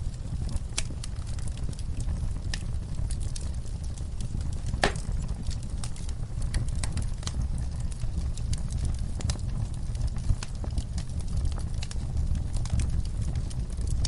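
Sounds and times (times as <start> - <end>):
campfire crackling: 0.0 - 14.0.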